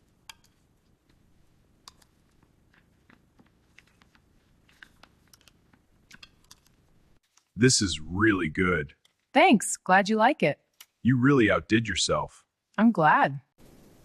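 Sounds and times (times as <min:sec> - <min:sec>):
faint clicks: 0:01.8 - 0:03.2
person chewing food: 0:01.8 - 0:06.8.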